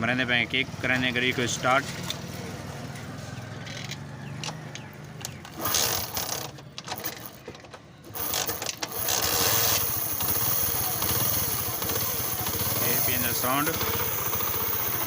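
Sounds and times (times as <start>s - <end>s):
kick-start mechanism clattering: 3.7s - 15.0s
motorcycle engine idling: 8.1s - 15.0s.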